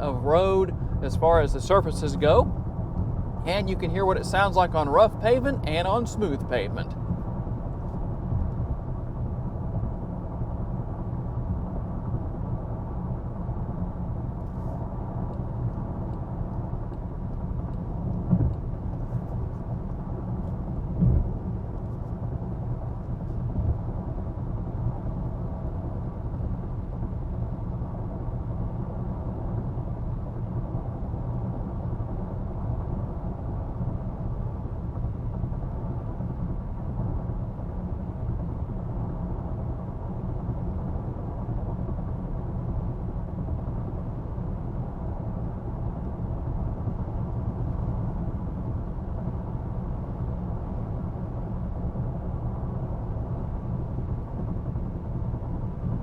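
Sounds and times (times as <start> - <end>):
wind noise: 14.3 - 56.0.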